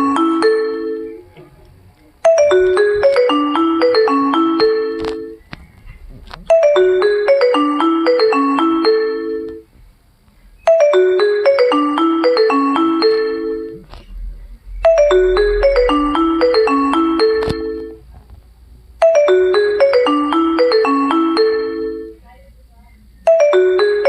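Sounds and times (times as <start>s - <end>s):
phone ringtone melody: 0.0s - 1.3s, 2.2s - 5.4s, 6.5s - 9.7s, 10.6s - 13.9s, 14.8s - 18.0s, 19.0s - 22.2s, 23.3s - 24.0s.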